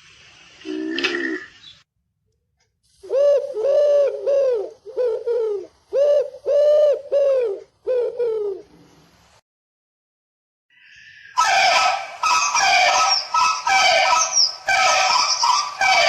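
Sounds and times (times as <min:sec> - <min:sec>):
animal hooting calls: 0:11.3 - 0:16.0.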